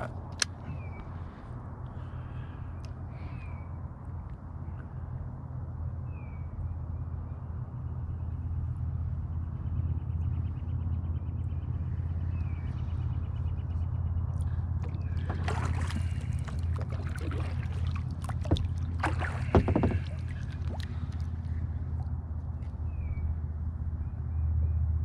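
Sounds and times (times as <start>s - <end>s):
wind rumble on microphone: 0.0s - 25.0s
water splashing: 14.4s - 22.1s
knocks against kayak: 18.5s - 20.2s.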